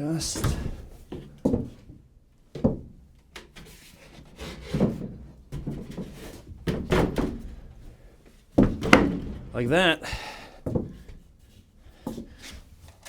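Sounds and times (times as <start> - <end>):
wood bumping and scraping: 0.2 - 1.9, 3.6 - 7.9, 8.6 - 11.1.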